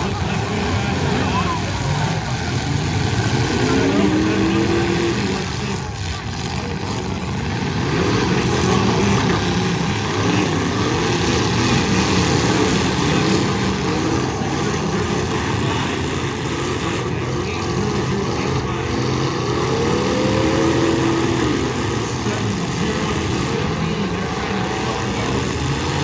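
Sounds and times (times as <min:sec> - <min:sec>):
car engines revving: 0:00.0 - 0:26.0.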